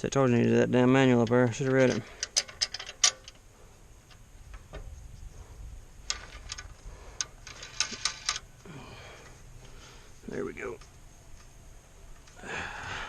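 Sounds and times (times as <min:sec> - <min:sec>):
clicks and knocks of parts: 0:01.1 - 0:04.9, 0:06.0 - 0:09.8, 0:10.7 - 0:12.4.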